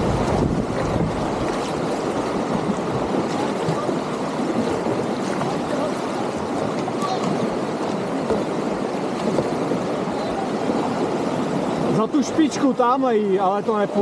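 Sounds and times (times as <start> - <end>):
river rapids rushing: 0.0 - 14.0.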